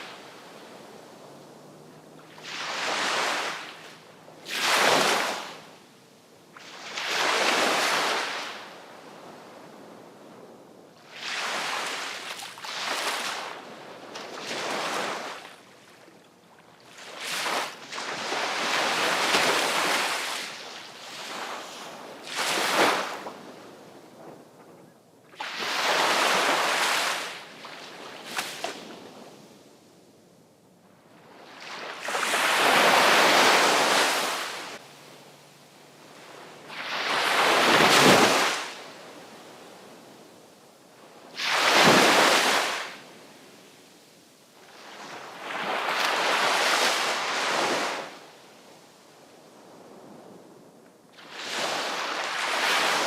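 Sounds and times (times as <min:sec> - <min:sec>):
sea waves breaking: 0:00.0 - 0:05.8, 0:11.1 - 0:23.6, 0:25.3 - 0:29.2, 0:31.3 - 0:39.4, 0:41.4 - 0:43.1.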